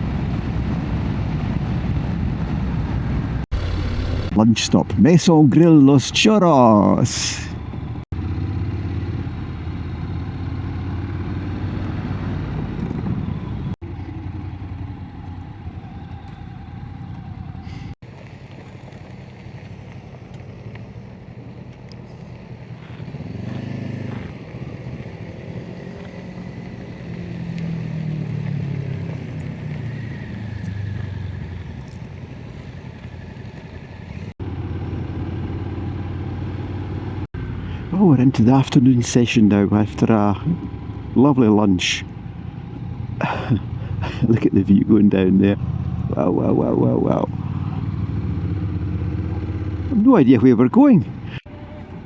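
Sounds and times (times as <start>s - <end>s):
road noise: 0.0s - 52.0s
motorcycle engine: 3.4s - 4.7s, 7.6s - 17.7s, 34.4s - 38.0s, 45.6s - 46.2s, 47.0s - 50.0s.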